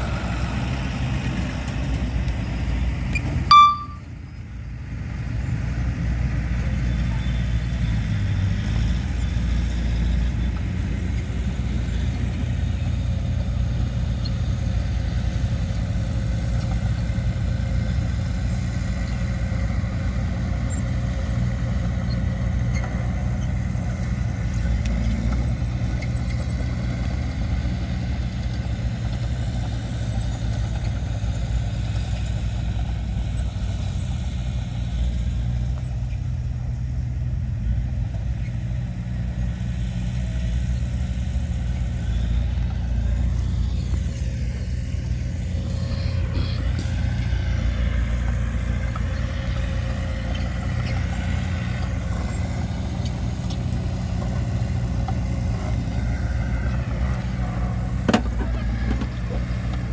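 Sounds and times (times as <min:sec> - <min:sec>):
diesel engines rumbling: 0:00.0 - 0:59.9
high-pitched blip: 0:03.5 - 0:04.0.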